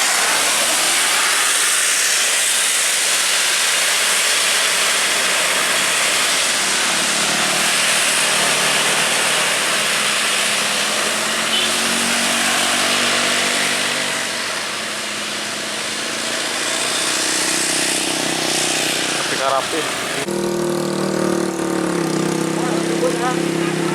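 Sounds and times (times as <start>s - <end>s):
dense rushing noise: 0.0s - 23.9s
truck engine under load: 5.4s - 23.9s.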